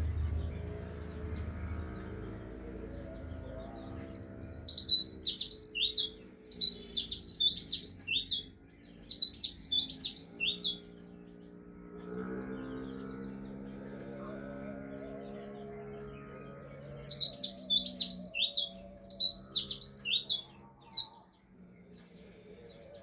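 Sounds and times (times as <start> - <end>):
bird twittering song: 0.0 - 23.0.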